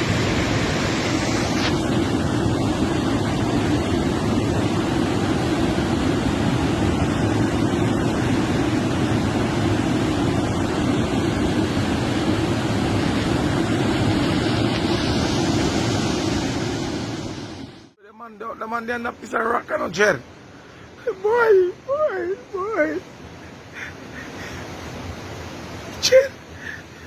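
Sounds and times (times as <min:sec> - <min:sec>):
loud rushing noise: 0:00.0 - 0:18.0.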